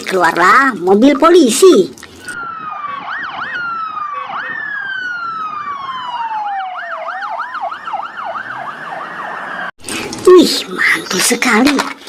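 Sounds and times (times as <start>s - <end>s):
police siren yelp and wail: 2.1s - 9.8s.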